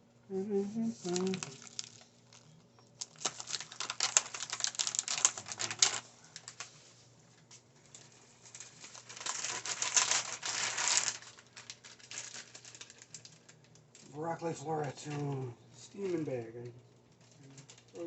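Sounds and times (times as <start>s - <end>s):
frozen broccoli rattling: 1.0s - 6.6s, 7.9s - 13.6s.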